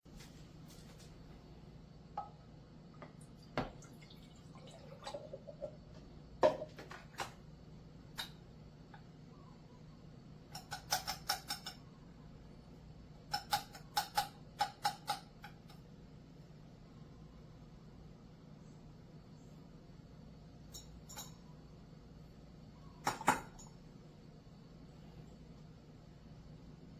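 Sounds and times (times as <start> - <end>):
kitchenware clinking: 6.4 - 7.2, 20.7 - 21.4, 23.0 - 23.8.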